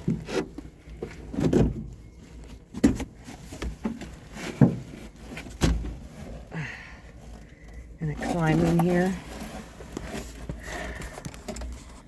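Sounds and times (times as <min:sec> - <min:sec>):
dull thumps and bumps: 0:00.0 - 0:06.5
shuffling: 0:00.0 - 0:12.0.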